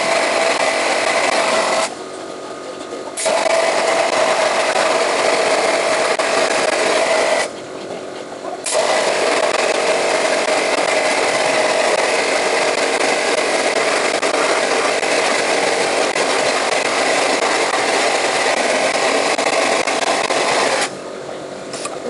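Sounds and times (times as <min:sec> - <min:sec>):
blasting gun spray: 0:00.0 - 0:02.0, 0:03.2 - 0:07.5, 0:08.6 - 0:21.0.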